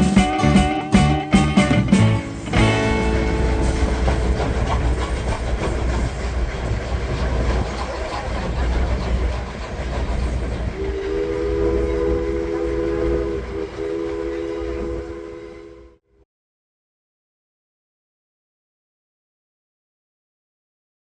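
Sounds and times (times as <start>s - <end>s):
train whistle chord: 0.0s - 4.6s, 10.8s - 16.1s
train rumble: 0.0s - 16.0s.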